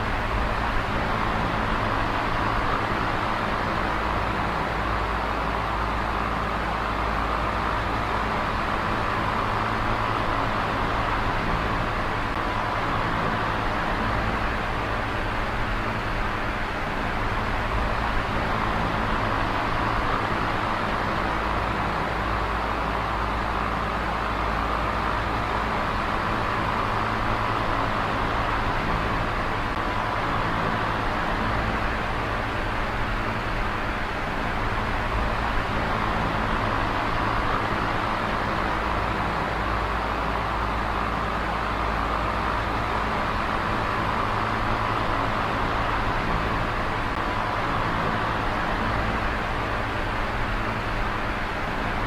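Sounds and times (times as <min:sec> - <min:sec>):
electric fan running: 0:00.0 - 0:52.0.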